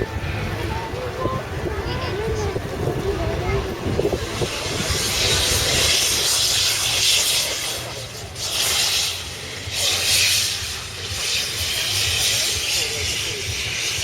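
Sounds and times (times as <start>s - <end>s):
low rumble: 0.0s - 14.0s
loud hissing: 3.2s - 14.0s.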